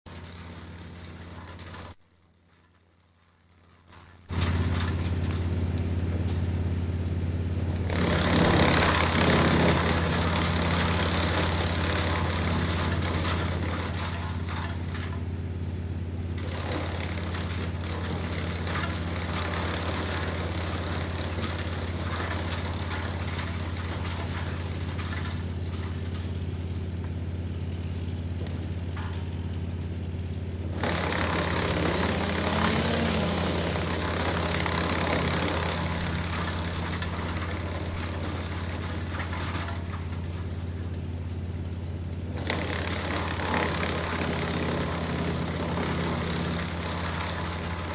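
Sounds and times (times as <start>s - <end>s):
wood chipper engine droning: 0.1s - 47.9s
wood being chipped: 30.2s - 40.9s, 42.2s - 47.9s.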